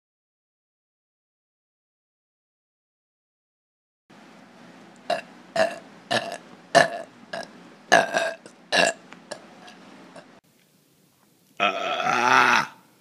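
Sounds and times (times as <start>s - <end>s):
person burping: 5.1s - 9.4s, 11.6s - 12.8s.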